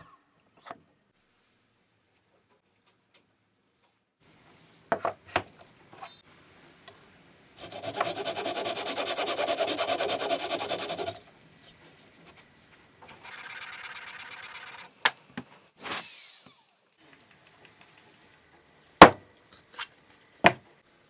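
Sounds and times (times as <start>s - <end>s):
tool rasping along wood: 7.6s - 11.2s.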